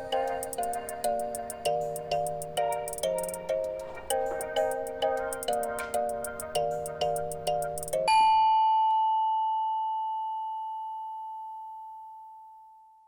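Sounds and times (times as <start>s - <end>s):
rhythmic notes with ticking: 0.0s - 8.2s
bell-like chime ringing: 0.0s - 11.6s.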